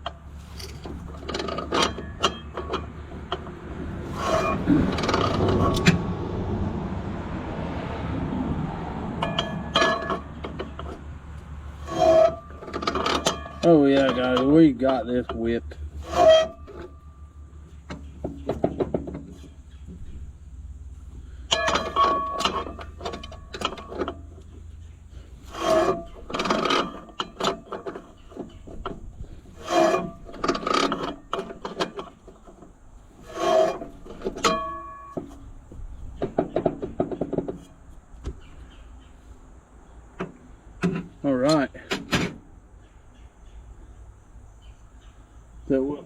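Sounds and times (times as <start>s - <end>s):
rapid metallic clicking and rattling: 9.2s - 20.2s, 25.5s - 35.4s.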